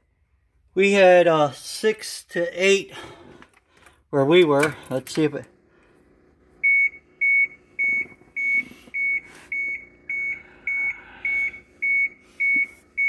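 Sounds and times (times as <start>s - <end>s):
dashboard warning buzzer beeping: 6.6s - 13.0s.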